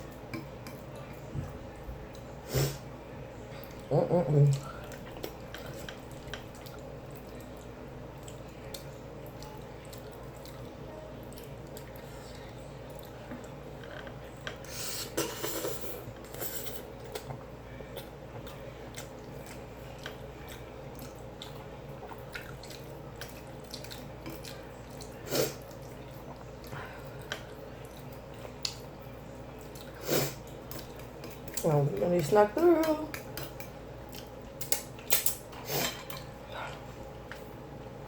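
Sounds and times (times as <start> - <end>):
wet chewing and mouth smacks: 17.0 - 28.9.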